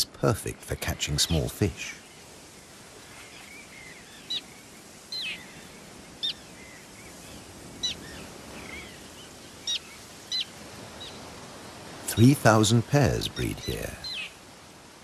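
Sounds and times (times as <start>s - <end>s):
background hiss: 0.0s - 15.0s
terns calling: 0.0s - 15.0s
faint bird chirps: 0.6s - 11.3s.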